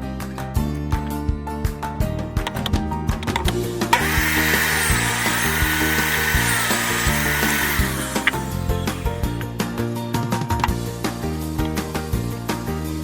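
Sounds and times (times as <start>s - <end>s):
background music: 0.0s - 13.0s
power tool whining: 2.4s - 9.8s.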